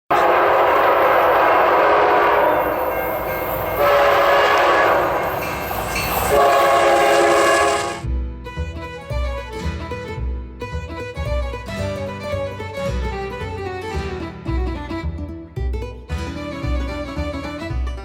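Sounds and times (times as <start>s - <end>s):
passing train rumble: 0.1s - 8.1s
train horn blasts: 0.1s - 8.1s
music: 5.4s - 18.0s.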